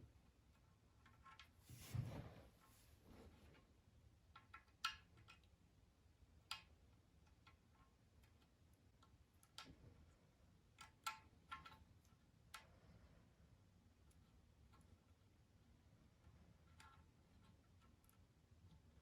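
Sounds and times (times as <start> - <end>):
faint light clicks and taps: 6.4 - 13.0.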